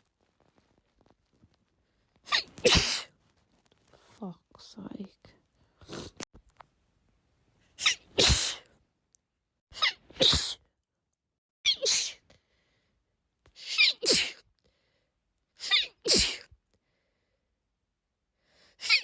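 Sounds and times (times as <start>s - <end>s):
woman sneezing: 2.3s - 3.1s, 7.8s - 8.7s, 9.8s - 10.6s, 11.7s - 12.2s, 13.6s - 14.4s, 15.6s - 16.5s.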